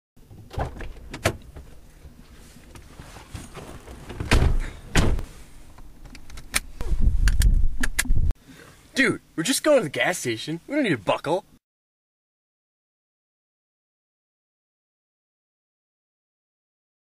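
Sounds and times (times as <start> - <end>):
car doors shutting: 0.2 - 5.4.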